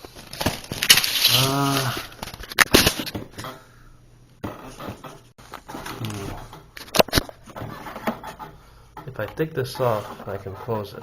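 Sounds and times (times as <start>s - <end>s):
man's wordless vocal sound: 6.0s - 6.5s.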